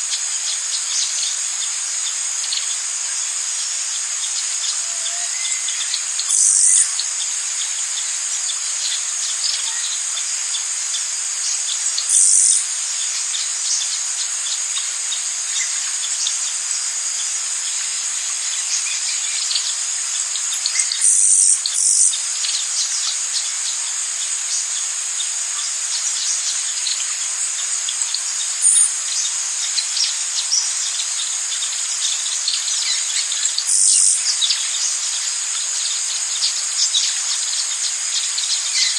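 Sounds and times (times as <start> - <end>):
insect chorus trilling: 0.0 - 38.9
loud insect buzz: 0.0 - 38.9
faint bird chirps: 4.3 - 6.9, 12.0 - 12.6, 20.6 - 22.2, 28.1 - 31.7, 32.4 - 34.9.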